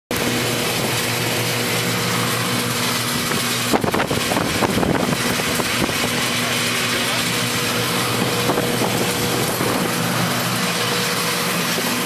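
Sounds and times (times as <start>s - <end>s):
jet engines roaring in cabin: 0.1s - 12.0s.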